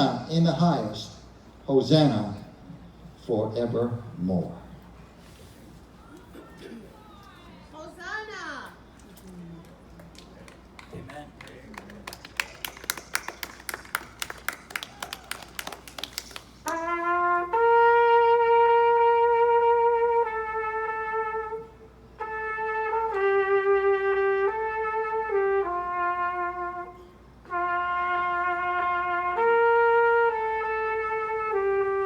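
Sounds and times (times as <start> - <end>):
hand clapping: 9.6 - 17.0
solo trumpet slow melody: 16.6 - 32.0.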